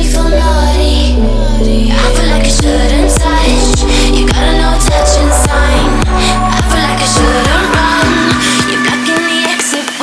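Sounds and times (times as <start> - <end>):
steady drum beat: 2.6 - 10.0
electronic dance music: 3.2 - 10.0.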